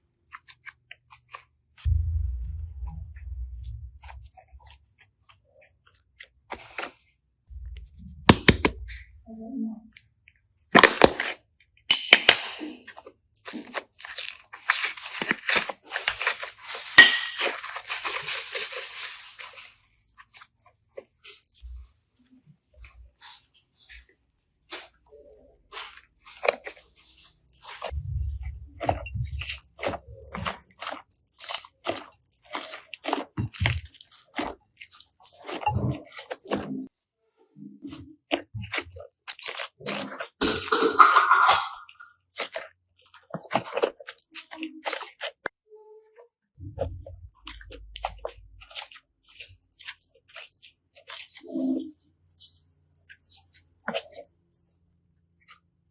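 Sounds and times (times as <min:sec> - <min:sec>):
slime squelching: 0:00.2 - 0:09.3, 0:12.9 - 0:55.9
slime crunching and crackling: 0:10.6 - 0:11.6, 0:13.2 - 0:22.2, 0:22.8 - 0:36.9, 0:37.8 - 0:41.2, 0:41.8 - 0:45.6, 0:46.8 - 0:55.9.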